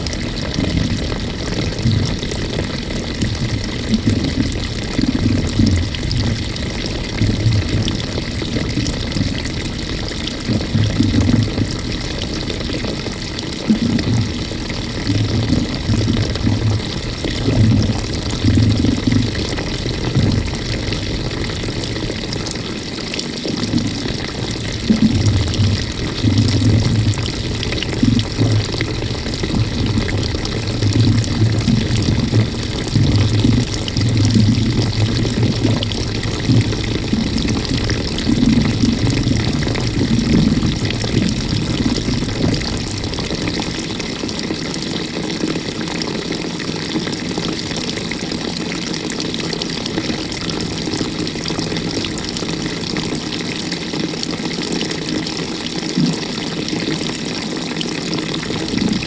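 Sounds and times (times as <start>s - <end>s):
water sloshing in washing machine: 0.0s - 59.0s.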